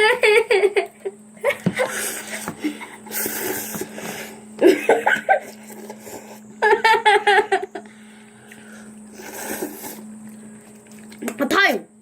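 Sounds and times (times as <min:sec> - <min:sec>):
children laughing and giggling: 0:00.0 - 0:03.2, 0:04.6 - 0:05.7, 0:06.6 - 0:07.9
low electrical hum: 0:00.0 - 0:12.0.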